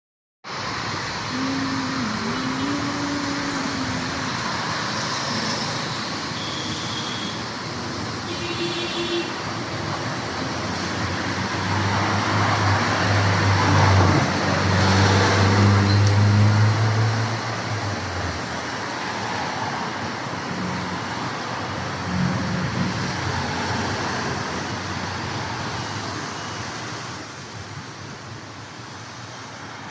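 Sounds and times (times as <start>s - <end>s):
road traffic passing: 0.4s - 29.9s
vehicle engine hum passing close: 9.6s - 26.2s.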